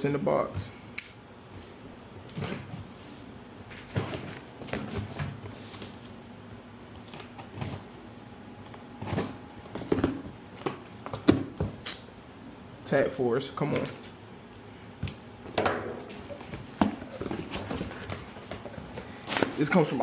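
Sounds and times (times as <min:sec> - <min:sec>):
packaging rustling: 0:16.1 - 0:20.0.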